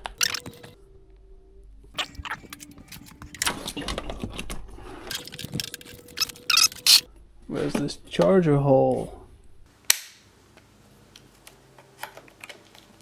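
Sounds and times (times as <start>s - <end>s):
charger plug and cable rattling: 5.1s - 7.0s.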